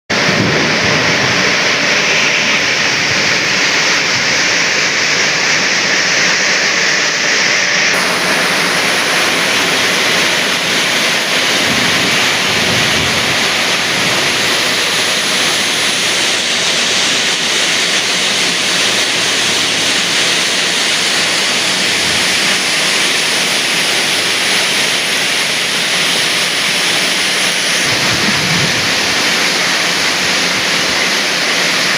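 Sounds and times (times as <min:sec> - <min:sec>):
wind noise: 0:00.1 - 0:06.2, 0:07.9 - 0:17.2, 0:27.0 - 0:31.9
rain on car: 0:09.0 - 0:31.9
road noise: 0:27.6 - 0:31.9.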